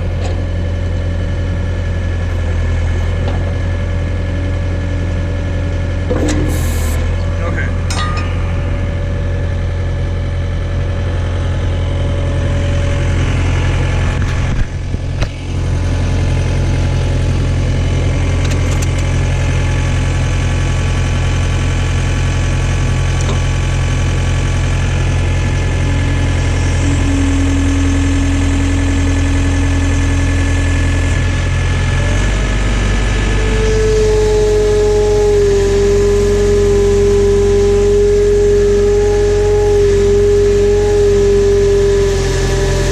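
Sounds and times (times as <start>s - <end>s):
diesel engine running: 0.0s - 42.9s
hydraulic whine: 0.0s - 42.9s
machine clunk: 6.1s - 6.8s, 7.8s - 8.7s.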